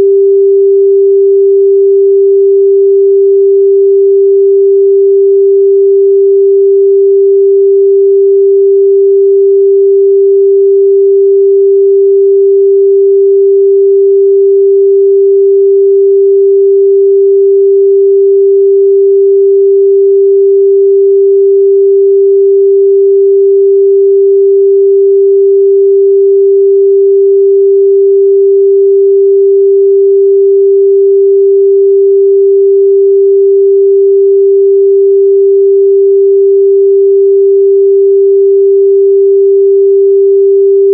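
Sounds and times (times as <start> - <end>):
sine-wave test tone: 0.0 - 40.9.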